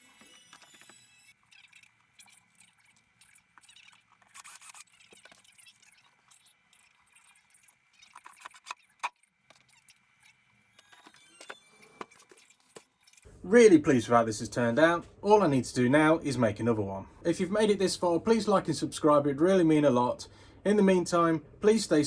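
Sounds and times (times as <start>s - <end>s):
small objects clicking and scraping: 0.0s - 13.3s.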